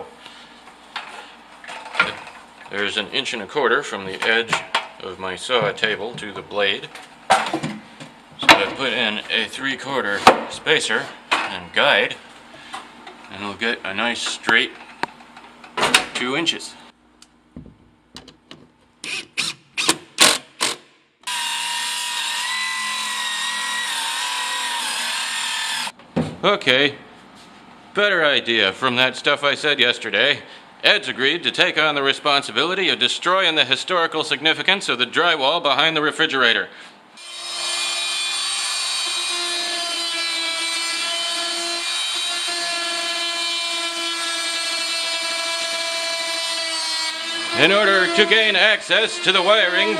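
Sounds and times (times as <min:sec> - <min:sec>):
circular saw whining: 0:21.2 - 0:25.9, 0:37.2 - 0:49.9
power tool motor whine: 0:21.3 - 0:25.9.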